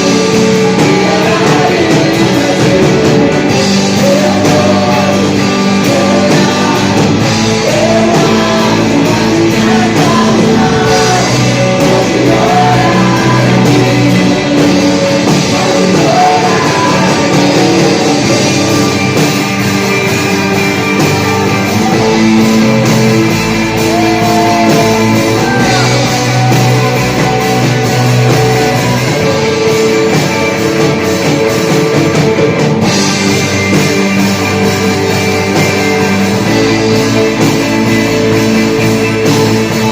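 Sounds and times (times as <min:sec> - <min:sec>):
person singing: 0:00.0 - 0:32.4
drums: 0:00.0 - 0:39.9
electric guitar: 0:00.0 - 0:39.9
rock band playing worship song: 0:00.0 - 0:39.9.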